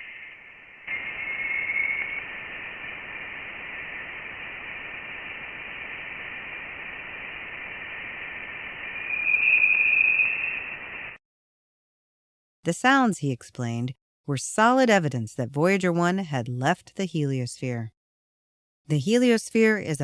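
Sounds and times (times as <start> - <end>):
thin high tones: 0.0 - 2.7, 8.8 - 11.1
steady hiss: 0.0 - 11.2.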